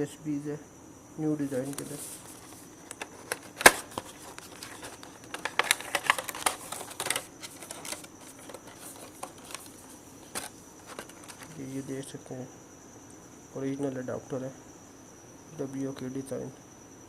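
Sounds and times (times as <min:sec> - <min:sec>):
plastic charger clicking and rattling: 0:02.8 - 0:11.6.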